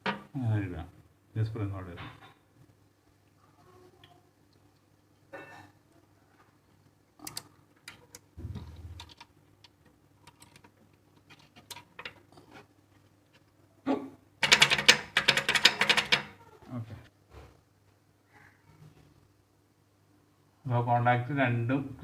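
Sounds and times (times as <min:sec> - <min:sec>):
small parts clicking: 0:07.2 - 0:08.3, 0:09.0 - 0:12.2.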